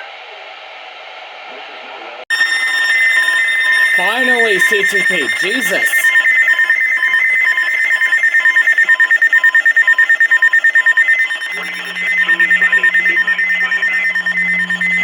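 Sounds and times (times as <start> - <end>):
pulsing electronic alert tones: 2.3 - 15.0
low steady hum: 11.6 - 15.0.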